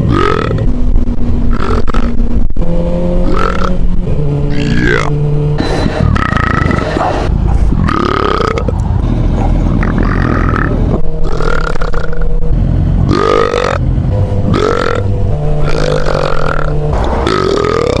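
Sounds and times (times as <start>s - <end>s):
man belching loudly: 0.0s - 0.7s, 1.5s - 2.2s, 3.2s - 3.9s, 4.5s - 5.2s, 6.0s - 7.0s, 7.8s - 8.8s, 9.8s - 12.4s, 13.1s - 13.8s, 14.5s - 18.0s
steady low rumble: 0.0s - 18.0s.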